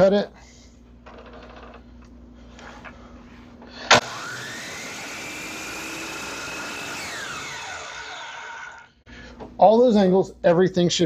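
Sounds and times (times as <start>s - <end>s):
miter saw motor whining: 3.9s - 9.0s.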